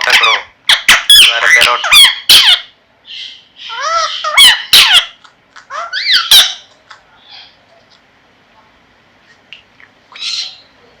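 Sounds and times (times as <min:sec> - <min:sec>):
parrot harsh calls: 0:00.0 - 0:07.6, 0:10.1 - 0:10.8.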